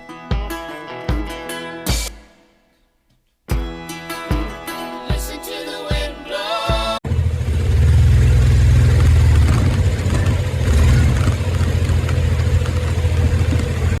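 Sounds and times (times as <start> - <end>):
atv engine running: 7.0 - 14.0.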